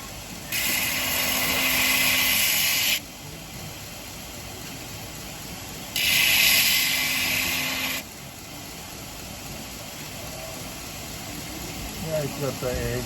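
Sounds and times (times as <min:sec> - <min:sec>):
belt sharpener running: 0:00.5 - 0:03.0, 0:06.0 - 0:08.0
blade grinding on belt: 0:00.5 - 0:03.0, 0:06.0 - 0:08.0.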